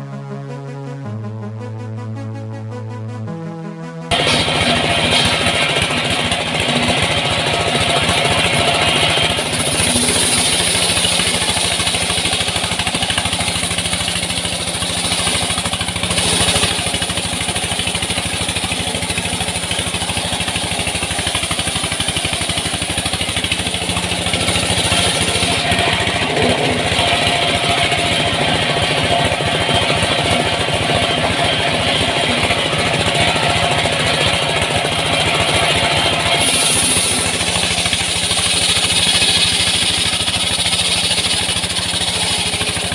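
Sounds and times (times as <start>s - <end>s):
small petrol saw engine running: 4.1s - 42.9s.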